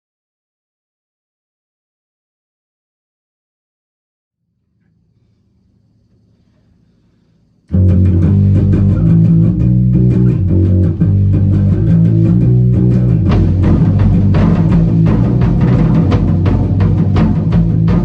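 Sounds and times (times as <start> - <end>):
bass guitar: 7.7 - 18.0
guitar playing: 7.7 - 18.0
drum hits: 11.5 - 18.0.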